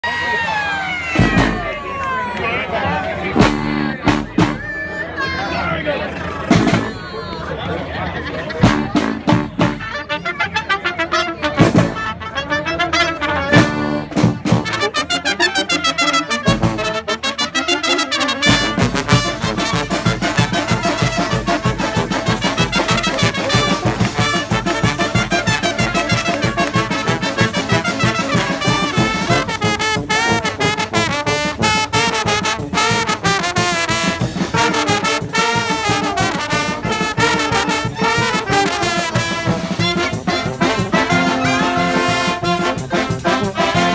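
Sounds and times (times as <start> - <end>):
brass band playing: 1.0 - 2.3, 3.2 - 4.8, 6.5 - 7.1, 8.6 - 43.9
steady drum beat: 1.2 - 1.8, 3.4 - 4.7, 6.5 - 7.0, 8.6 - 10.0, 11.6 - 12.0, 13.6 - 17.4, 18.2 - 43.9.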